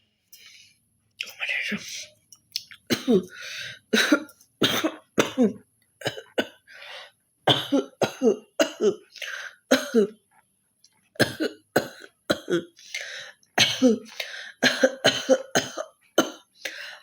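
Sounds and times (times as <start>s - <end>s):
person coughing: 2.9s - 6.6s, 7.5s - 9.1s, 9.7s - 10.2s, 11.2s - 12.8s, 13.6s - 16.5s.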